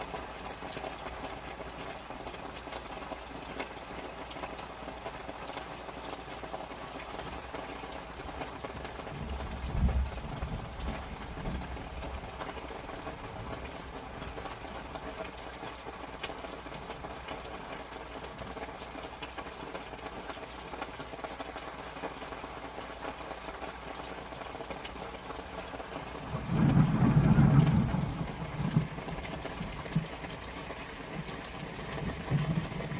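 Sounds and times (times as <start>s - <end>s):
rain falling on tarps: 0.0s - 32.9s.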